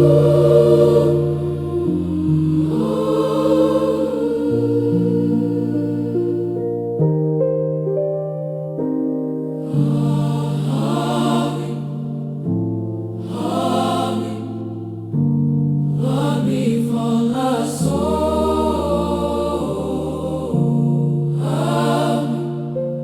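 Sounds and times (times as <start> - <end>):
gospel choir singing held chords: 0.0 - 7.2, 9.4 - 23.0.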